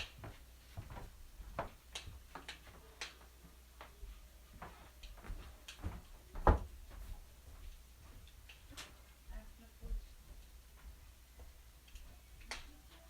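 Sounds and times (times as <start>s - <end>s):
wood fire crackling: 0.0s - 13.0s
fire snaps and pops: 1.6s - 3.4s, 11.8s - 12.8s.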